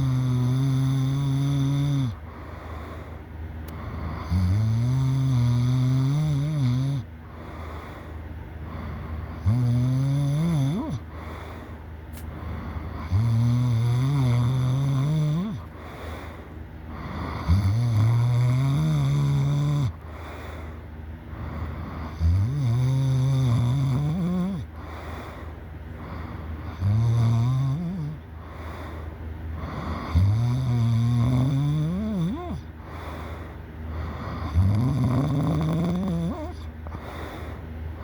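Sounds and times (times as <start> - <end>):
person snoring loudly: 0.0 - 2.3, 3.9 - 7.1, 8.7 - 11.4, 12.6 - 16.1, 16.9 - 20.4, 21.5 - 24.7, 26.1 - 28.6, 29.6 - 33.2, 34.0 - 37.2
quiet breathing: 0.0 - 18.3, 18.9 - 22.2, 24.1 - 27.0, 27.6 - 30.3, 31.5 - 34.6, 35.2 - 38.0.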